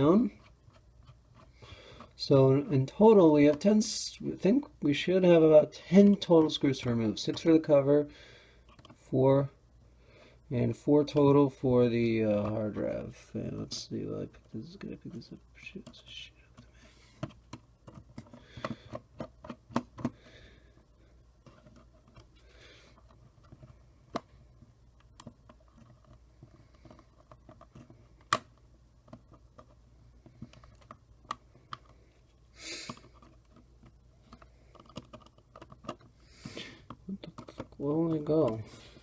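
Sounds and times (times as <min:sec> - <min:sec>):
small clicks and taps: 0:25.0 - 0:32.0, 0:32.9 - 0:36.1.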